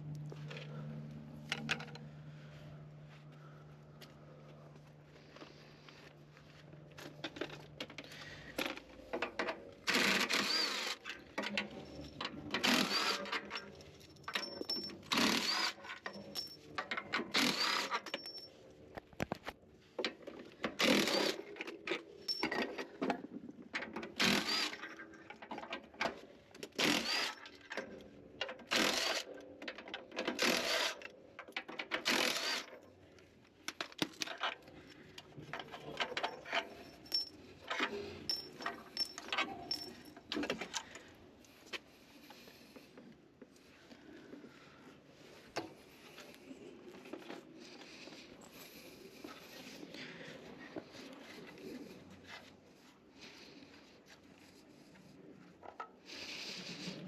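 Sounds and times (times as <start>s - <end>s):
hand tools clinking on metal: 9.2s - 18.6s, 20.9s - 23.0s, 34.2s - 41.0s.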